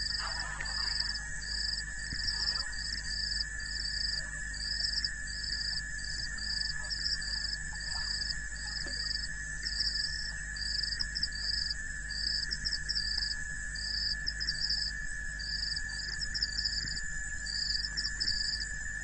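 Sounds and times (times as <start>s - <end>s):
insect drone: 0.0s - 19.0s
insect trill pulsing: 0.0s - 19.0s.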